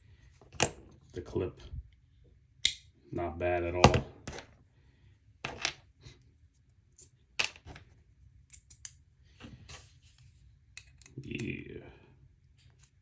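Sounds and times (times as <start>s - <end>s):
folding knife metallic clicks: 2.6s - 2.9s.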